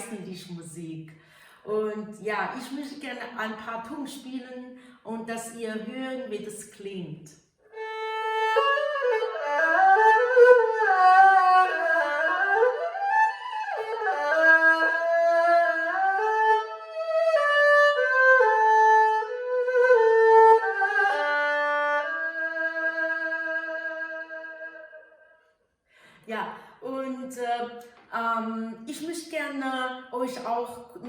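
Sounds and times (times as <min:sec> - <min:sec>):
bowed fiddle melody: 0:07.7 - 0:25.1.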